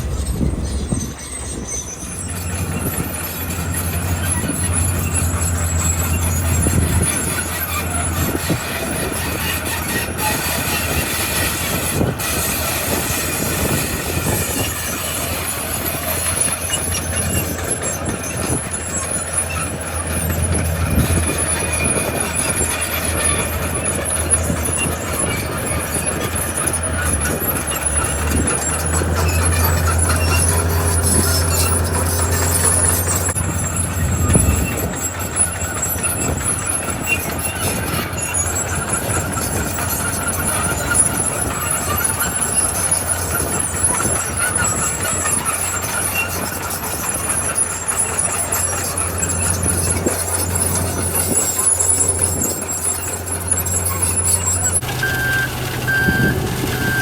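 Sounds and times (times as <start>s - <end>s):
diesel engine droning: 0.0s - 57.0s
metallic grinding: 0.0s - 57.0s.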